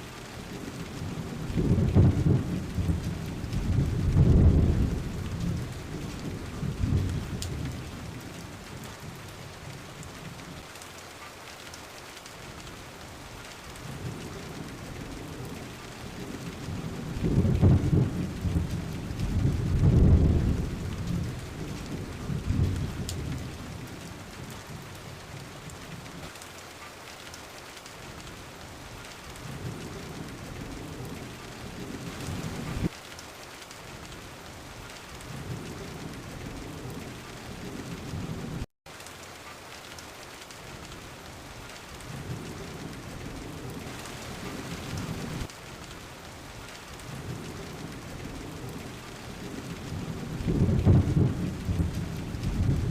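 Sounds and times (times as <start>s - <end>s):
steady rain falling: 0.0s - 52.9s
rolling thunder: 0.6s - 9.2s, 13.8s - 24.8s, 47.0s - 52.9s.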